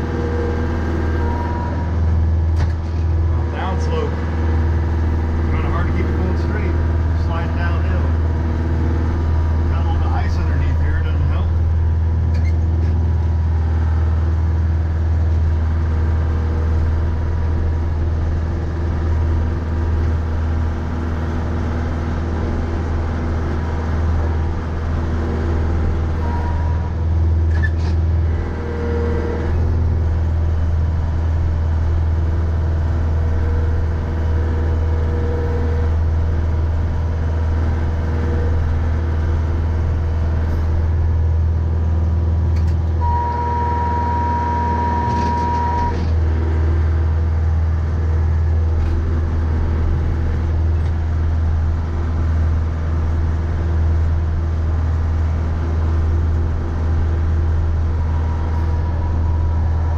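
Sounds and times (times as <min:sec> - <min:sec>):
tractor diesel engine droning: 0:00.0 - 0:59.9.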